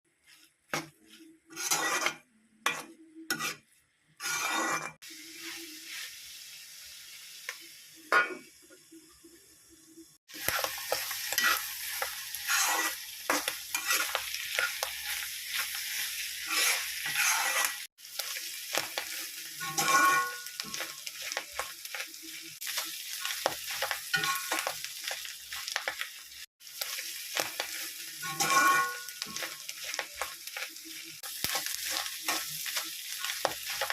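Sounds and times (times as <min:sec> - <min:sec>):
spatula scraping a pan: 0:00.2 - 0:06.1, 0:10.4 - 0:24.7, 0:26.8 - 0:33.9
clam meat sizzling in a pan: 0:04.2 - 0:33.9
utensil clinking on a pan: 0:19.6 - 0:20.9, 0:24.1 - 0:24.7, 0:28.2 - 0:29.6.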